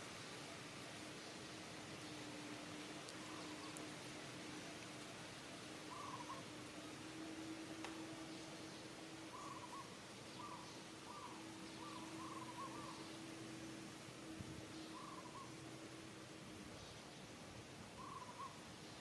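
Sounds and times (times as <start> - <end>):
wavering animal calls: 5.9 - 6.6, 9.2 - 13.8, 14.8 - 16.1, 18.0 - 18.6.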